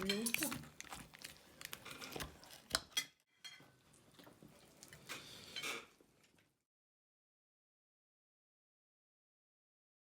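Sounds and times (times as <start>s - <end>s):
utensils and dishes clinking: 0.0s - 0.9s.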